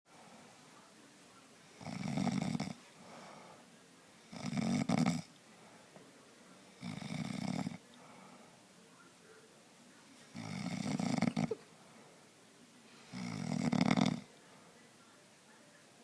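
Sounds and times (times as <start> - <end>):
faint breathing: 0.1 - 0.9, 2.8 - 4.3, 5.4 - 6.8, 7.8 - 8.8, 10.1 - 13.4, 14.2 - 15.0
man snoring: 10.4 - 11.6, 13.2 - 14.2.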